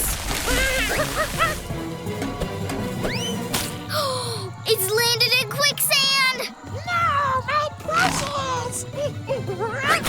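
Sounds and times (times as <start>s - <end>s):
cartoon background music: 0.3s - 10.0s.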